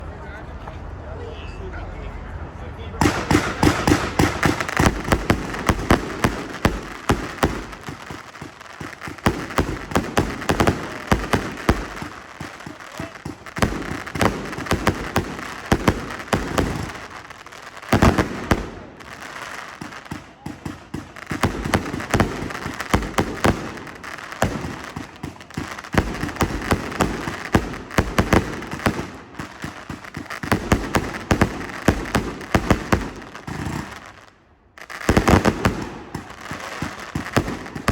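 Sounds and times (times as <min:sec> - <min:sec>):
loud firework bang: 0:03.0 - 0:17.1
firework barrage crackling: 0:03.0 - 0:37.9.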